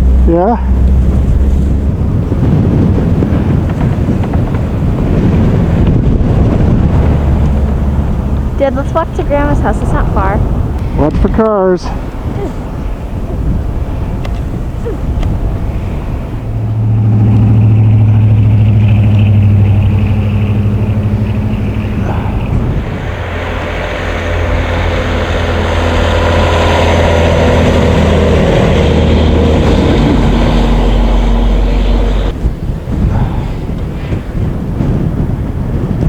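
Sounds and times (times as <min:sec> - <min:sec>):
motor vehicle engines running: 0:00.0 - 0:36.0.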